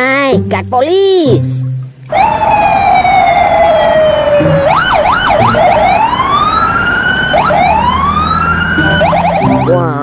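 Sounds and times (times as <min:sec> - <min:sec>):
police siren wailing and yelping: 0:02.1 - 0:10.0.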